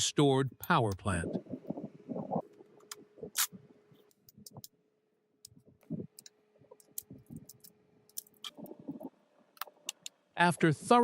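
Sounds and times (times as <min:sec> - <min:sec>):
faint hum: 0:00.0 - 0:11.0.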